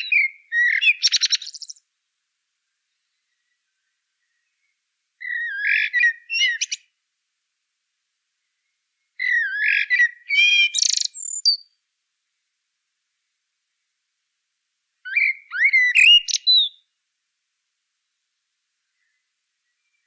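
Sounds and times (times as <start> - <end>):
songbird warbling: 0.0 - 1.8, 4.2 - 6.9, 8.6 - 11.7, 15.0 - 16.8.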